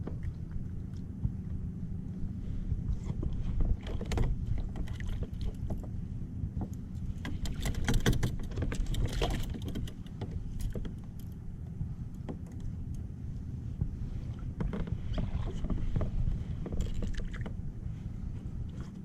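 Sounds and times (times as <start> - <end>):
wind and water rumble: 0.0 - 19.0
gear clicking and rattling: 7.1 - 11.4.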